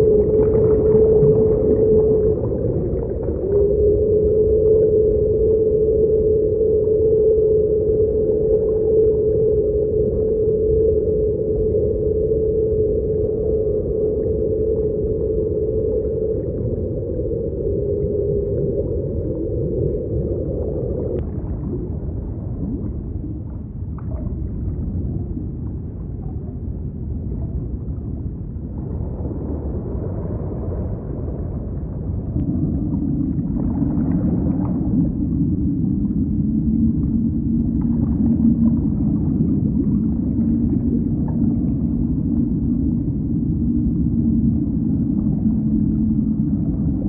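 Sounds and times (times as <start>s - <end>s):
steady low drone: 0.0s - 47.0s
underwater low rumble: 0.0s - 47.0s.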